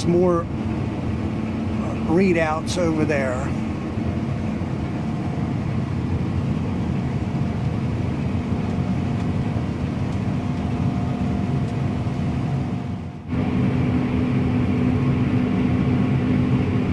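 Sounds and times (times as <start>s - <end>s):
combine harvester engine drone: 0.0s - 16.9s
faint steady hum: 0.0s - 16.9s.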